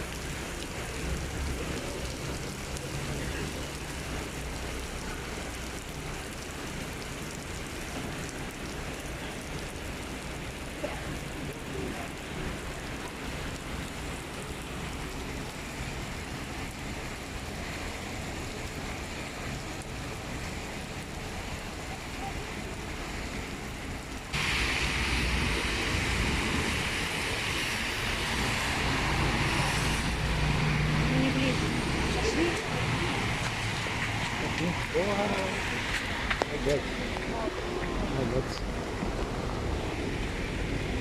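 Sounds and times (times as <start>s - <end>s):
road traffic noise: 0.0s - 41.0s
steady rain: 0.0s - 41.0s.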